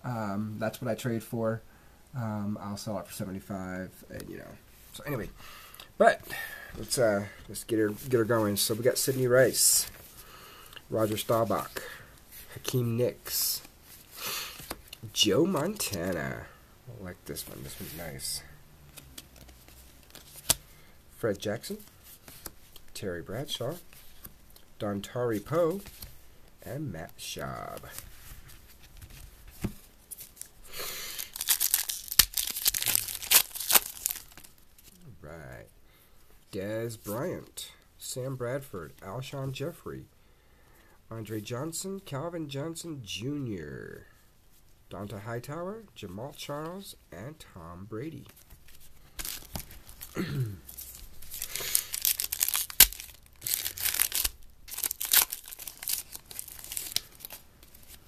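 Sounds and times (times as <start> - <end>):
foil wrapper tearing and crinkling: 31.2 - 34.5, 49.2 - 58.0.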